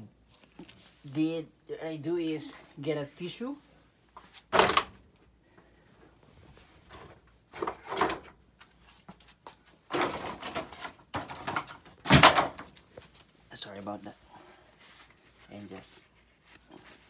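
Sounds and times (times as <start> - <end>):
tissue rustling: 12.9 - 17.0.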